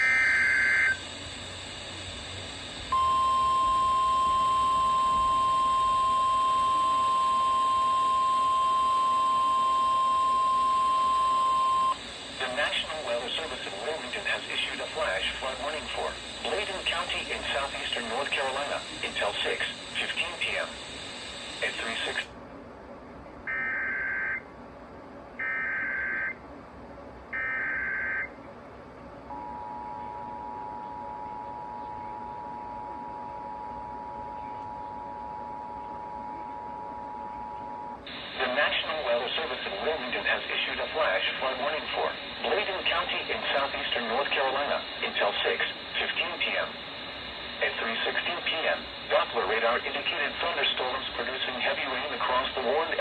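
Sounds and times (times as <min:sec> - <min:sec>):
steady electronic alarm tone: 0:00.0 - 0:22.2, 0:23.5 - 0:24.4, 0:25.4 - 0:26.4, 0:27.4 - 0:28.3
two-tone attention signal: 0:02.9 - 0:12.0.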